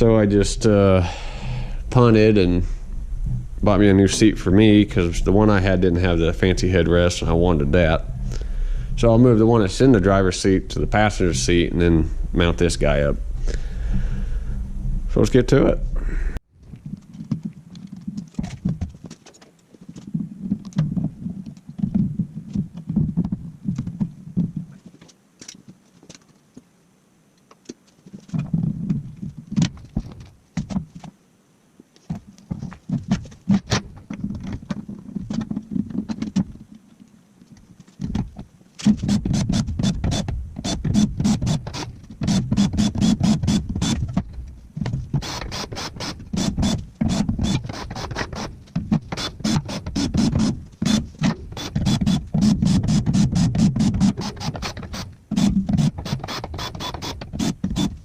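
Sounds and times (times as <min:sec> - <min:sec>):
power tool running: 0:39.0 - 0:44.0, 0:45.2 - 0:48.5, 0:49.1 - 0:58.0.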